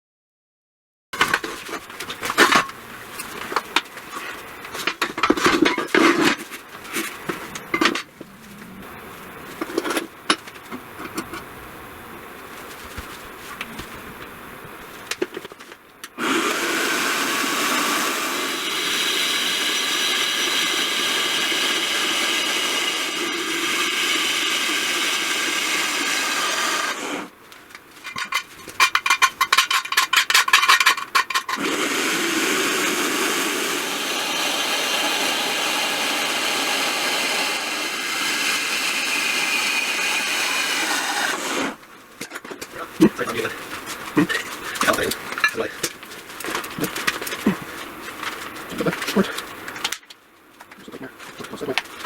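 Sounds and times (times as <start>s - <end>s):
power tool working on metal: 16.2s - 27.4s, 30.8s - 41.8s.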